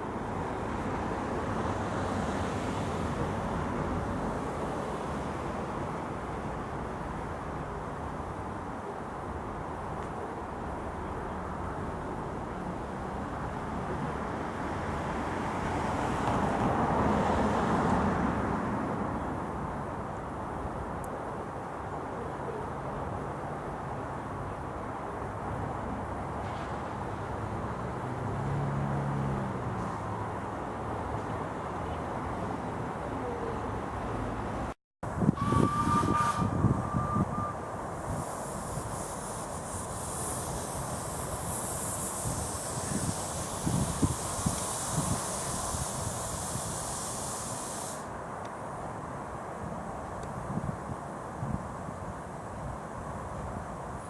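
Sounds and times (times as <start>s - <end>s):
steam locomotive whistle: 35.3s - 37.6s
miniature train rolling past: 35.4s - 48.1s
steady steam hiss: 37.7s - 50.1s
low steam chuffs: 38.0s - 48.2s.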